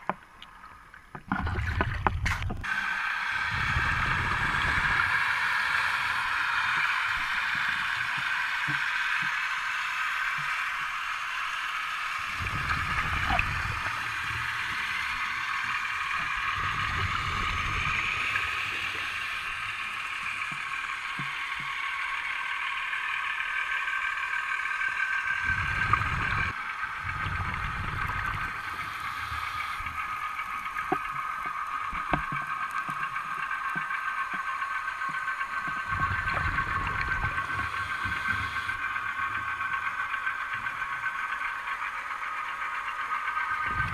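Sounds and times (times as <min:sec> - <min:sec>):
steady high-toned hum: 0:02.6 - 0:43.9
faint clicks: 0:04.9 - 0:43.9
low underwater bubbling: 0:12.2 - 0:22.2, 0:25.2 - 0:41.6.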